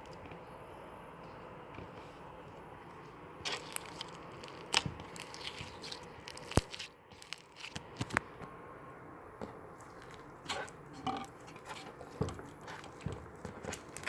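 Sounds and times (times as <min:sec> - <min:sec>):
slime crackling and clicking: 0:03.5 - 0:08.3.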